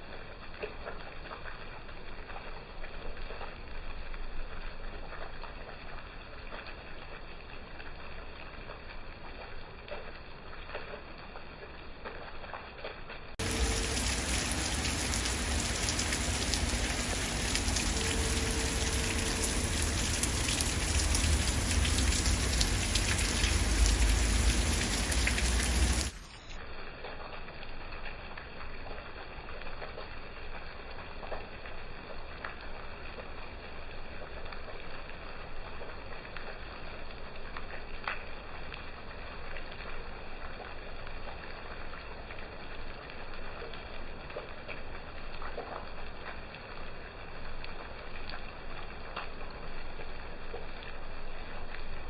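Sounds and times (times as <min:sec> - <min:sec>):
thin quiet rain: 0:00.0 - 0:52.0
heavy rain crackling: 0:13.3 - 0:52.0
low rumble: 0:13.4 - 0:26.2.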